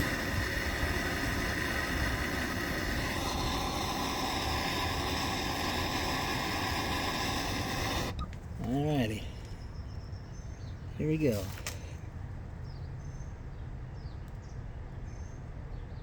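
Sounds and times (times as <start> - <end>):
gas torch flame hissing: 0.0 - 9.3.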